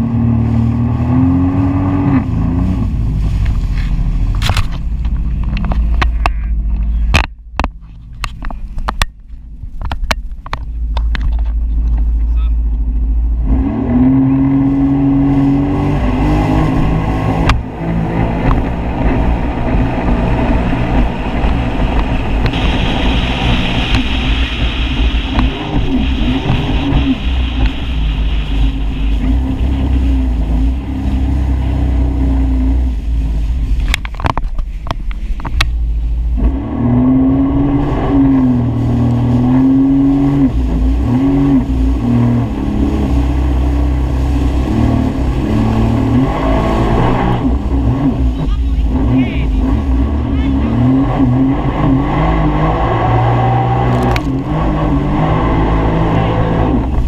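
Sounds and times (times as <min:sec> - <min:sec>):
jet ski engine: 0:00.0 - 0:57.0
water spray hissing: 0:22.5 - 0:30.1.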